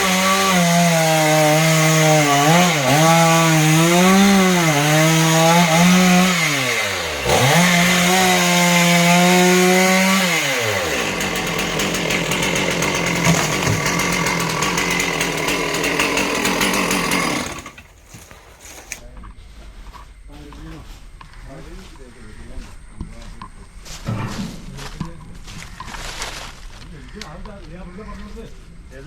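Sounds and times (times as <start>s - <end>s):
chainsaw cutting at high revs: 0.0s - 17.9s.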